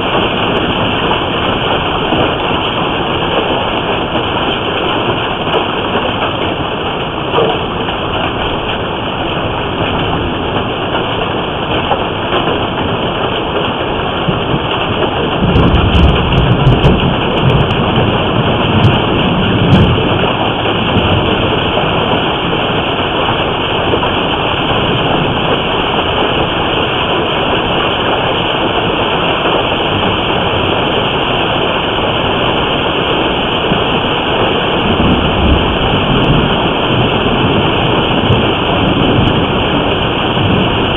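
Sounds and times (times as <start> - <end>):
hail pounding on house: 0.0 - 40.9
low rumble of thunder: 0.0 - 40.9.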